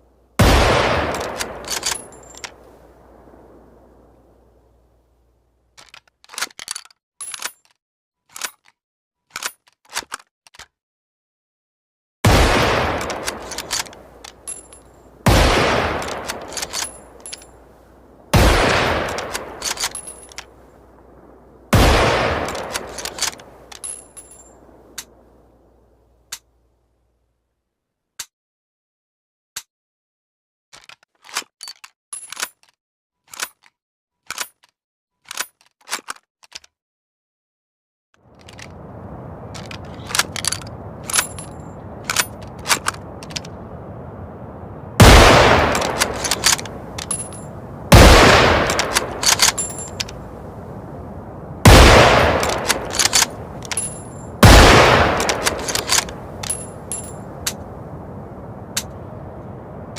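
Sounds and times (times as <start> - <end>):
rifle shot echo: 0.4 - 4.2, 12.2 - 14.2, 15.2 - 23.7, 44.7 - 59.9
rifle bolt metallic clicks: 1.0 - 3.4, 5.8 - 10.8, 12.7 - 14.9, 15.8 - 17.6, 18.6 - 21.3, 21.9 - 25.2, 34.3 - 36.7, 38.4 - 43.6, 45.0 - 51.0, 51.7 - 59.5.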